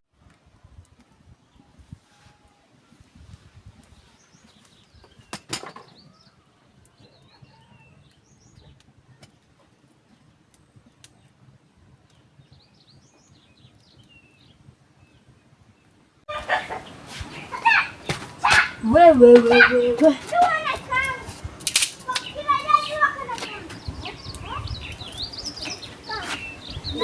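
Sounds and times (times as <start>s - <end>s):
loud rustling: 16.3s - 27.0s
faint bird chirps: 22.2s - 27.0s.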